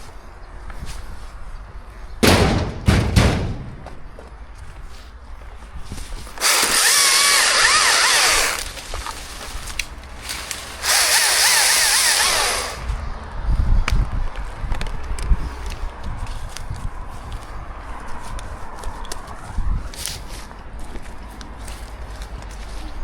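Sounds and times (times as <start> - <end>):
low knocks and thuds: 2.2 - 4.4
chainsaw cutting wood: 6.4 - 9.2, 10.3 - 12.9.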